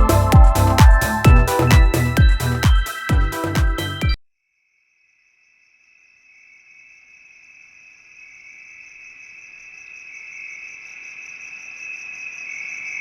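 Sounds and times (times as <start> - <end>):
high fast-pulsing trill: 0.0 - 4.2.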